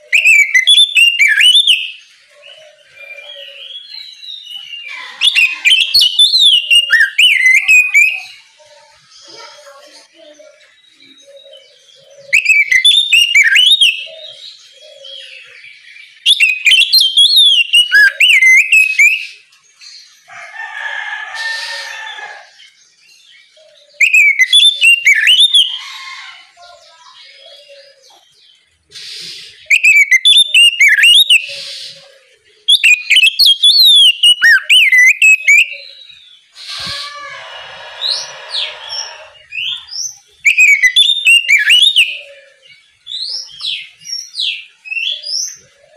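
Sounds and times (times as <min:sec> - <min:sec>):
bird singing whistled notes: 0:00.0 - 0:08.6, 0:10.6 - 0:19.4, 0:23.7 - 0:25.8, 0:29.0 - 0:32.0, 0:32.6 - 0:37.2, 0:38.1 - 0:45.7
harsh rasping bird call: 0:20.8 - 0:22.5, 0:32.8 - 0:39.9.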